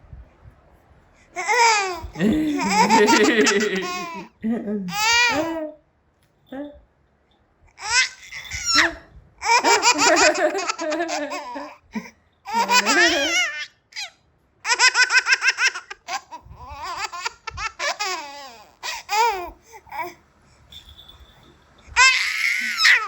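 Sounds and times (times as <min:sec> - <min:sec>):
baby laughing: 0:01.4 - 0:05.6, 0:07.8 - 0:20.2, 0:22.0 - 0:23.0.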